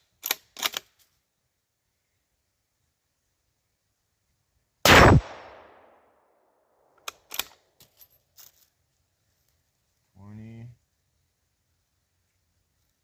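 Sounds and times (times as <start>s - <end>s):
rifle bolt metallic clicks: 0.2s - 1.0s, 7.0s - 7.6s
rifle shot: 4.8s - 6.0s.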